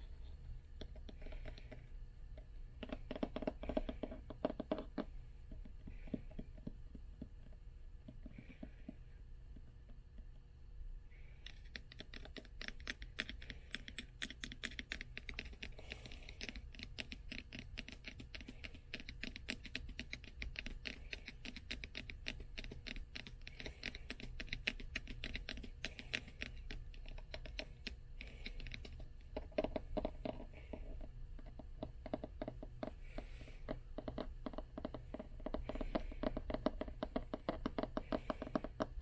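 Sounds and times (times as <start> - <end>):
fingernails tapping on book covers: 2.8 - 9.0.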